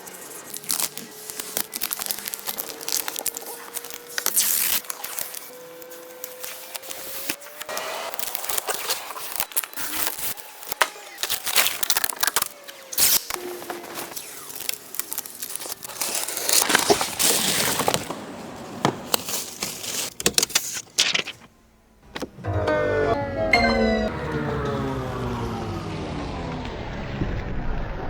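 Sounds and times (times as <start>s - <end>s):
packaging crinkling and tearing: 0.0s - 18.2s, 19.0s - 21.5s.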